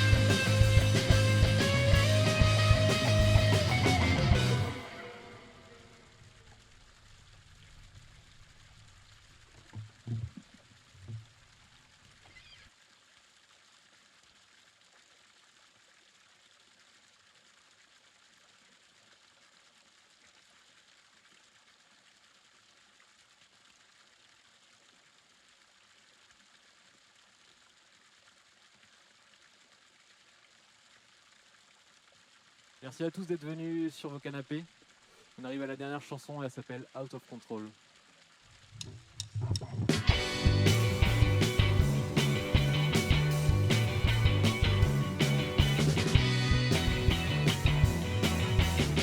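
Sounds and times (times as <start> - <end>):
faint steady hiss: 0.0 - 49.0
soft low thumps: 9.6 - 11.3.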